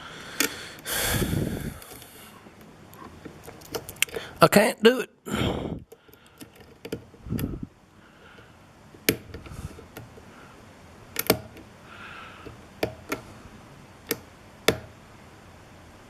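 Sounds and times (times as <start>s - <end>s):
lock picks clicking in a lock: 11.2s - 11.6s.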